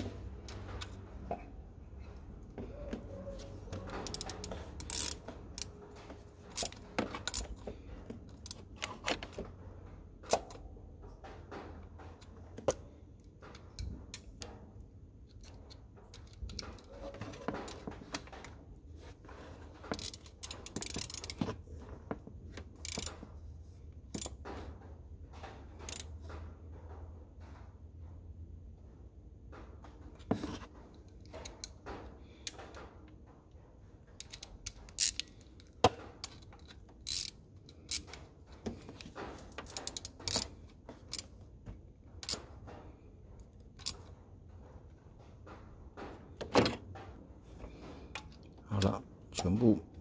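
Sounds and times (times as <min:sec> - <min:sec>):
ratchet wrench clicking: 0:04.0 - 0:05.8, 0:06.5 - 0:07.6, 0:19.9 - 0:21.4, 0:22.8 - 0:23.2, 0:25.9 - 0:26.1, 0:34.2 - 0:35.4, 0:37.0 - 0:38.2, 0:39.7 - 0:40.5, 0:41.1 - 0:41.3.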